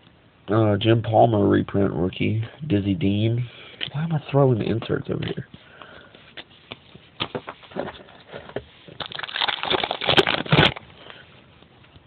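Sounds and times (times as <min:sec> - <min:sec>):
cards rustling: 0:04.7 - 0:10.9.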